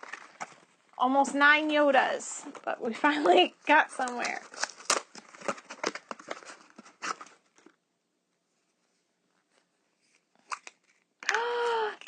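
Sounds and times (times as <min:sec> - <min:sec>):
toy packet crinkling and rustling: 0:00.0 - 0:01.0, 0:02.4 - 0:07.8, 0:10.0 - 0:12.0.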